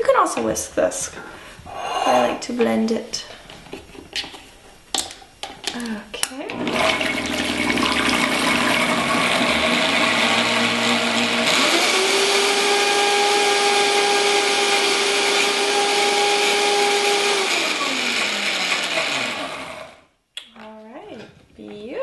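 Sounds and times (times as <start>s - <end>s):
blender whirring: 6.5s - 20.0s.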